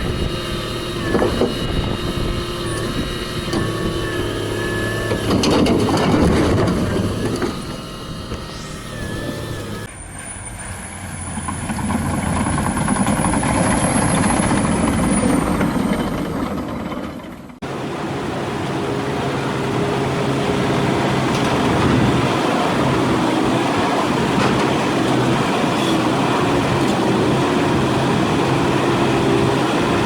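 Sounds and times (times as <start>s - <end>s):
diesel engine running hard: 0.0s - 30.0s
thin high whine: 7.2s - 10.7s.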